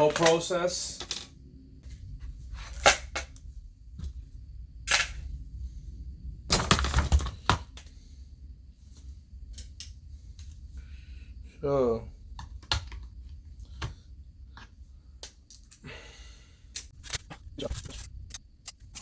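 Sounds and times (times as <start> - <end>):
low hum: 1.0 - 7.0, 16.3 - 19.0.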